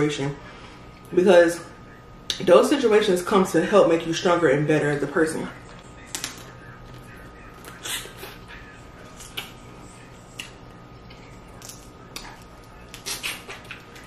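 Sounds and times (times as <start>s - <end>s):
chewing and mouth smacks: 9.1s - 9.6s, 10.3s - 14.0s.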